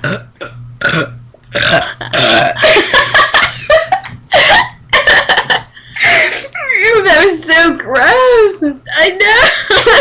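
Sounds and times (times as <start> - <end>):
woman burping: 0.0 - 2.8.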